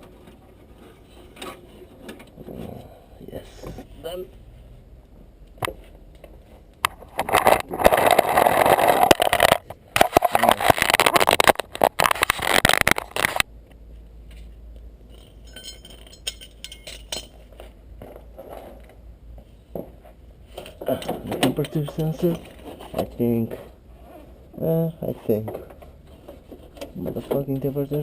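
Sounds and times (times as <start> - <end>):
tools scraping and clinking: 15.1 - 18.9.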